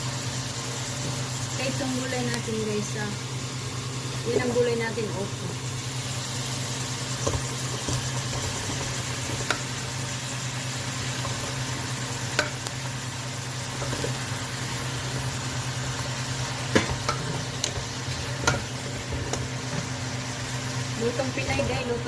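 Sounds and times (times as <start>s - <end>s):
steady low hum: 0.0s - 22.0s
vegetables sizzling in a pan: 0.0s - 22.0s
utensil clacking against pan: 7.2s - 9.8s, 12.3s - 12.7s, 16.7s - 20.0s.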